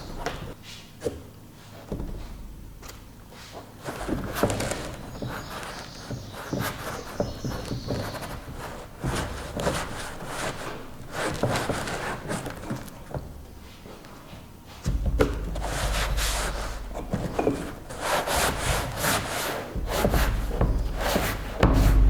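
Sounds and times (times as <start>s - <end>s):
loud clunks: 19.7s - 22.0s.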